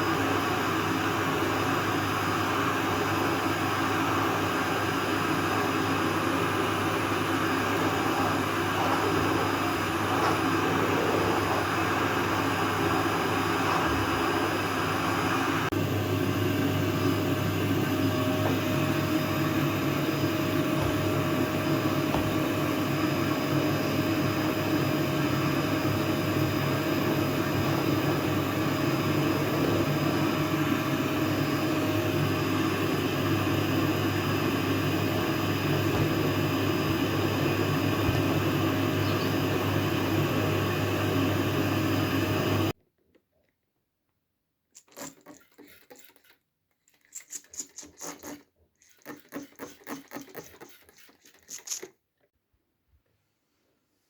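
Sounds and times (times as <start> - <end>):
appliance motor humming: 0.0 - 42.7, 44.8 - 51.9
light rubbing and scratching: 44.8 - 51.9.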